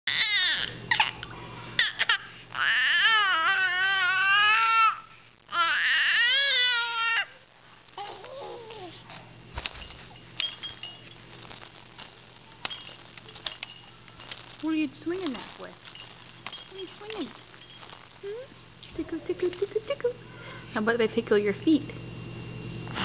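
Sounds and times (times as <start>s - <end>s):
baby vocalizing: 8.0s - 9.0s.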